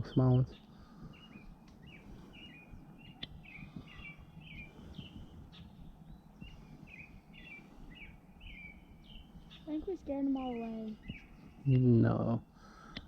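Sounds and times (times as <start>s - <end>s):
low background noise: 0.0s - 13.0s
songbird chirping: 0.0s - 13.0s.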